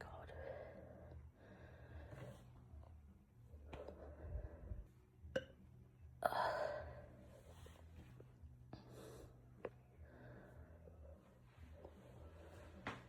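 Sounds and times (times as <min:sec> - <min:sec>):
person breathing and straining: 0:03.5 - 0:04.9.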